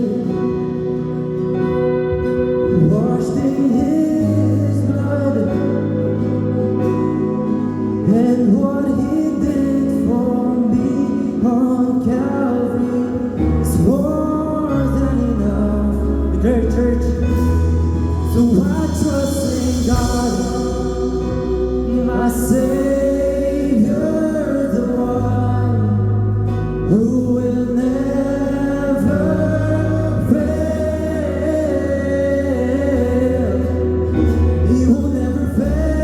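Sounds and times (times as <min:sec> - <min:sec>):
bass and keyboard chords: 0:00.0 - 0:36.0
congregation singing praise song: 0:08.0 - 0:36.0.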